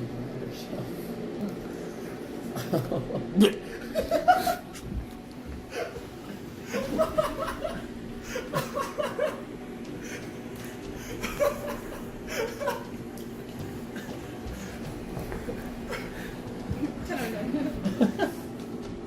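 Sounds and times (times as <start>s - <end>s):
young people laughing: 2.5s - 4.8s, 5.6s - 9.5s, 11.0s - 13.0s, 15.5s - 18.4s.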